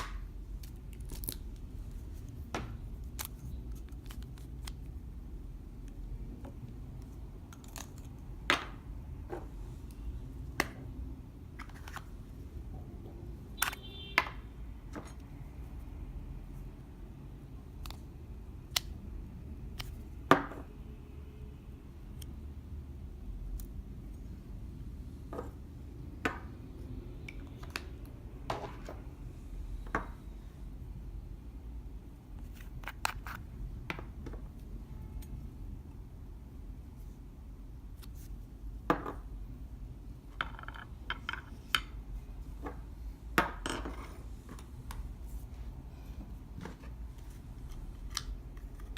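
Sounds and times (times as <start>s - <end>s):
tools clicking tapping and scraping: 32.5s - 34.4s.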